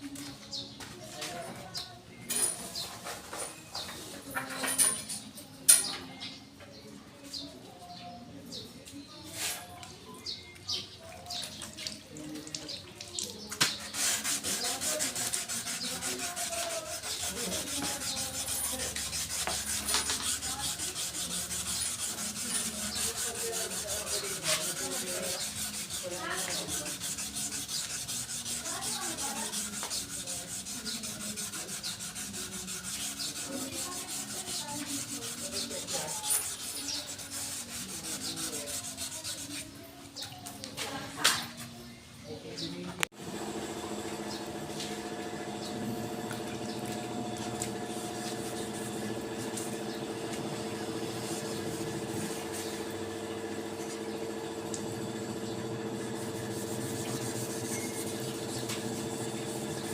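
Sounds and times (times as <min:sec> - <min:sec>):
sandpaper scrubbing: 0:13.3 - 0:39.8, 0:44.2 - 0:59.9.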